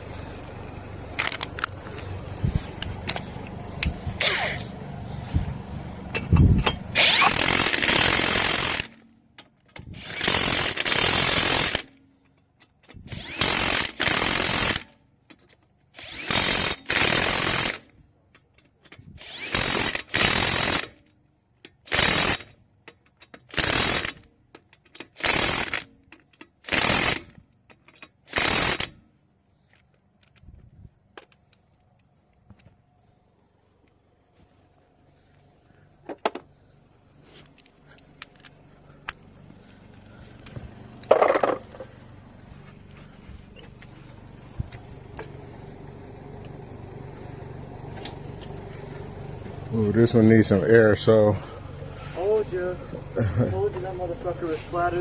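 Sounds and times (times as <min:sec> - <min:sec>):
impact wrench running lug nuts: 0:01.2 - 0:02.1, 0:02.8 - 0:04.8, 0:06.0 - 0:18.0, 0:18.8 - 0:21.1, 0:21.7 - 0:29.0, 0:37.4 - 0:42.0.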